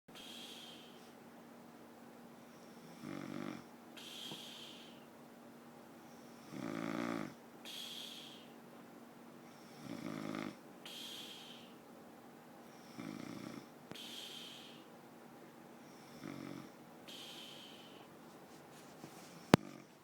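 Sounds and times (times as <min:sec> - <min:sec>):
man snoring: 0:02.9 - 0:03.7, 0:06.4 - 0:07.4, 0:09.7 - 0:10.6, 0:12.9 - 0:13.7, 0:16.0 - 0:16.8, 0:19.5 - 0:20.0
short breathy hiss: 0:04.0 - 0:05.0, 0:13.9 - 0:14.9.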